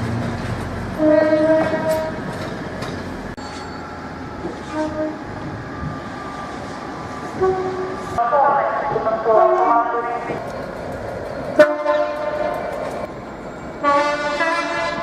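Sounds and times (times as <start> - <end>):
train running noise: 0.0 - 15.0
train horn: 1.0 - 2.2, 4.6 - 5.2, 7.4 - 8.0, 11.6 - 12.5, 13.8 - 15.0.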